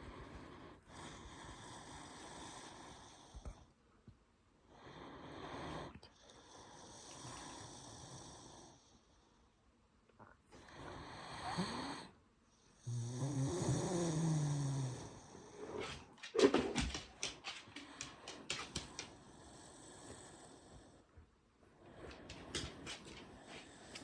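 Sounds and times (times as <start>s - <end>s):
dog snoring: 10.7s - 12.1s, 12.8s - 16.9s.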